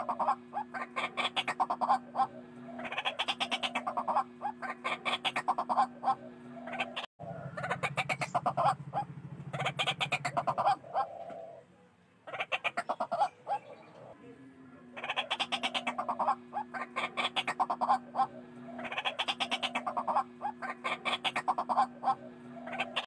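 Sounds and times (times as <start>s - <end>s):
waterhens croaking calls: 0.0s - 14.2s, 14.9s - 23.0s.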